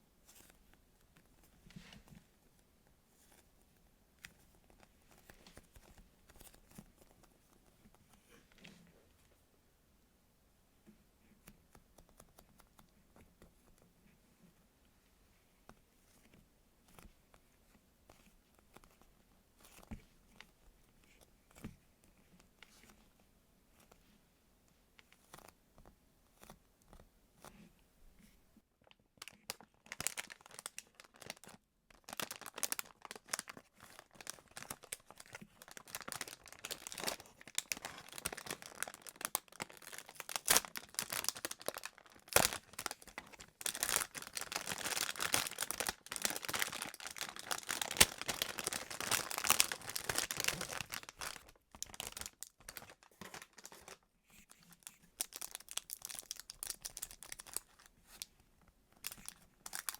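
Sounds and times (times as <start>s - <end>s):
squeeze toys crinkling and crackling: 28.8s - 59.9s.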